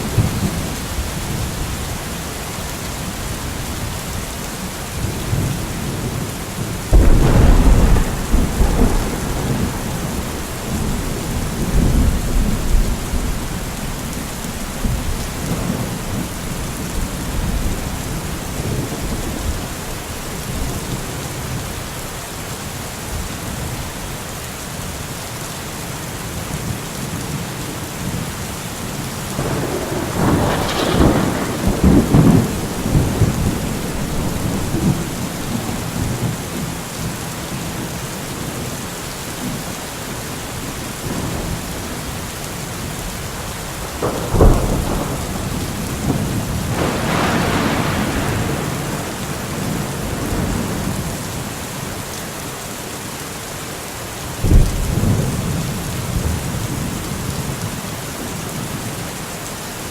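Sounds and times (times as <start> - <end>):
heavy rain: 0.0 - 59.9
rolling thunder: 5.0 - 19.7, 29.3 - 38.6, 43.8 - 51.5, 54.4 - 57.7.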